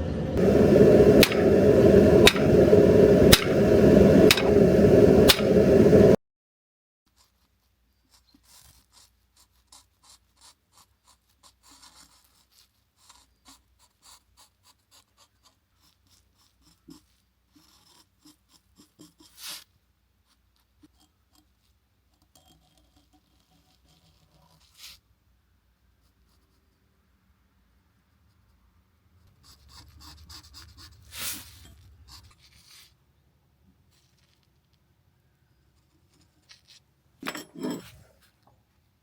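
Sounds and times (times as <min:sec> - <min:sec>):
light scratching strokes: 0:29.6 - 0:33.0, 0:35.8 - 0:38.4
loud scrape: 0:37.2 - 0:38.3.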